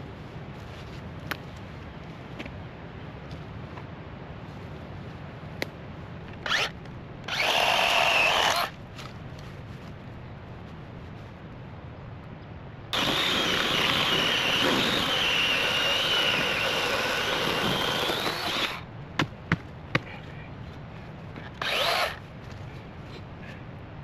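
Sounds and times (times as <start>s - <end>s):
electric chainsaw cutting log: 6.4s - 6.7s, 7.3s - 8.7s, 13.0s - 18.8s, 21.6s - 22.2s.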